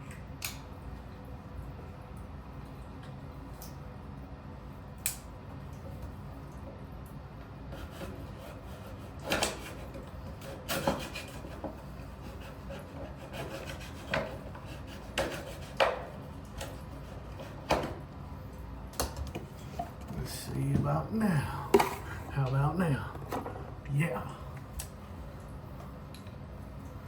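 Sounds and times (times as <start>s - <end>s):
hand tool scraping strokes: 12.2s - 15.8s.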